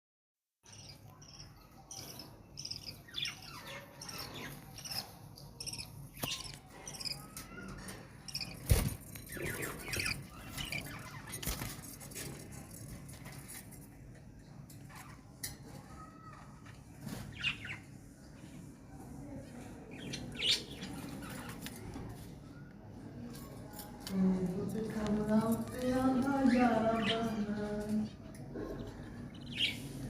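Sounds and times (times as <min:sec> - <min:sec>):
parrot chicks calling: 0:00.7 - 0:11.8, 0:28.5 - 0:29.9.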